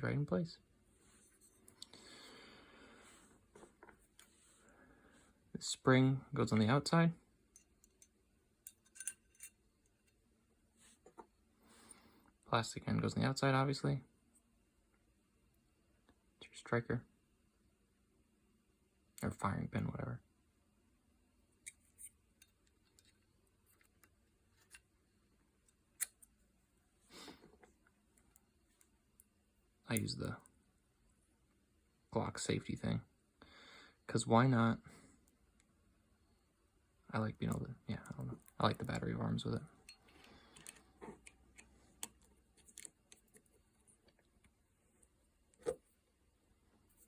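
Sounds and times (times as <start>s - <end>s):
pistol parts clicking: 8.7s - 9.5s.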